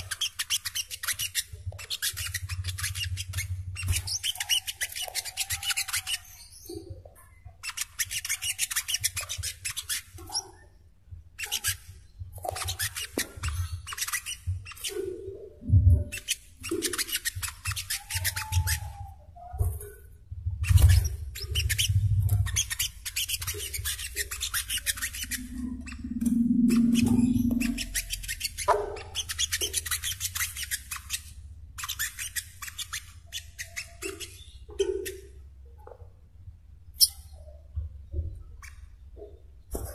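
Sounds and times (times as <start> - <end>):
bird singing chattering song: 0.0 - 10.8, 20.6 - 36.0, 36.9 - 39.4
low hum: 25.3 - 28.0.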